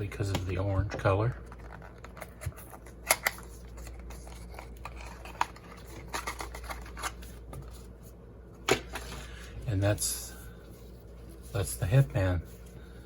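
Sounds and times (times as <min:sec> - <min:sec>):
packaging rustling: 0:01.3 - 0:08.0.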